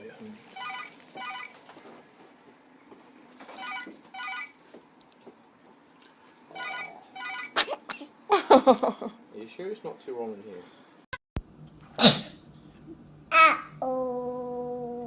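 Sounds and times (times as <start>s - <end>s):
telephone ringing: 0.6s - 1.6s, 3.4s - 4.6s, 6.5s - 7.6s
person sneezing: 12.0s - 12.4s.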